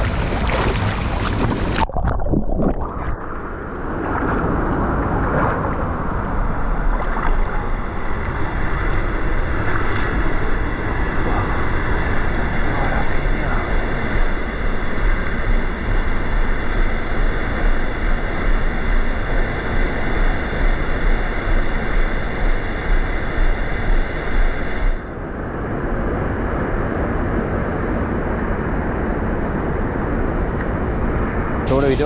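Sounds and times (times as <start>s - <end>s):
water rushing over rapids: 0.0s - 3.0s.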